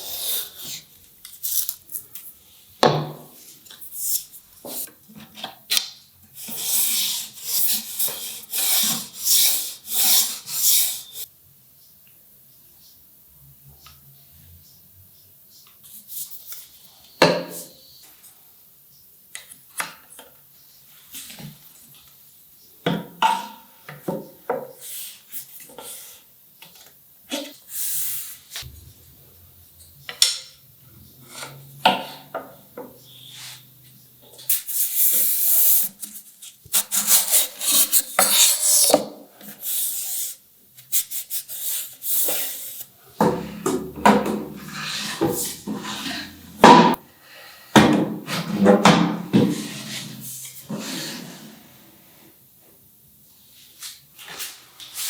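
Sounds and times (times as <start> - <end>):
scraping and rubbing on wood: 42.2 - 47.0, 48.0 - 51.6.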